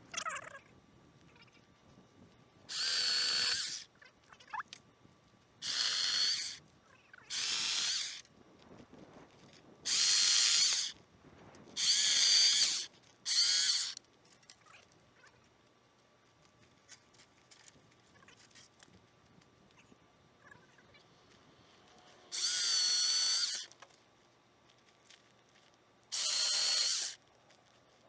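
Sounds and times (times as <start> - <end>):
electric chainsaw bursts: 2.7 - 3.8, 5.6 - 6.6, 7.3 - 8.2, 9.9 - 11.0, 11.8 - 14.0, 22.3 - 23.7, 26.1 - 27.2.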